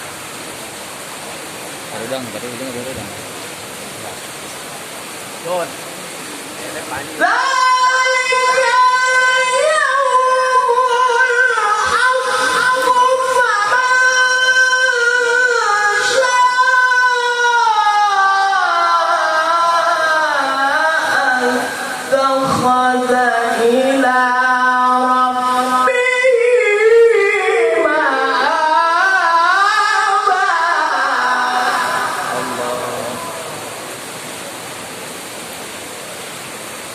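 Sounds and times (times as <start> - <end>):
person reciting melodically: 7.0 - 33.9
person chanting in high held notes: 30.2 - 33.8.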